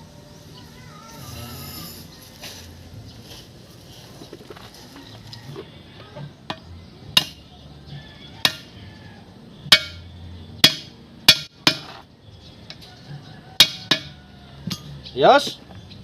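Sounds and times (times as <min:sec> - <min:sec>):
hammer striking metal: 0:07.2 - 0:07.4, 0:08.4 - 0:08.7, 0:09.7 - 0:12.0, 0:13.6 - 0:14.9.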